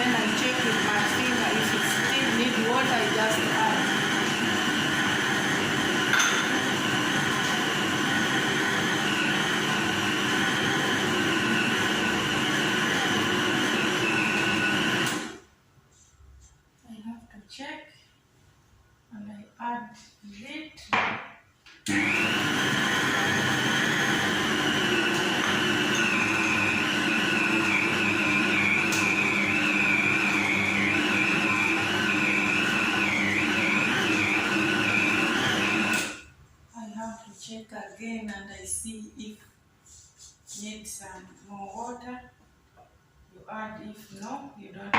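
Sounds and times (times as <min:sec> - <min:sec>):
electric mixer motor whine: 0:00.0 - 0:15.4, 0:21.9 - 0:36.2.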